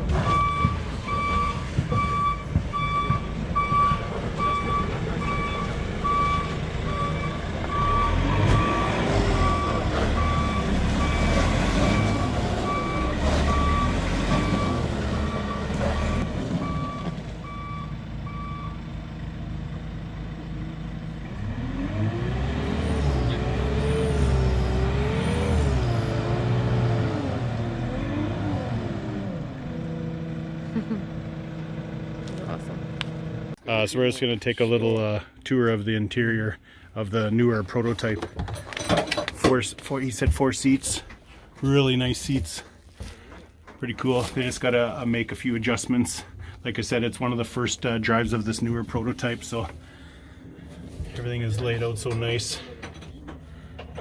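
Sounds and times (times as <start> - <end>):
diesel engine revving: 0.0 - 33.6, 43.8 - 54.0
reversing beeper: 0.2 - 18.8.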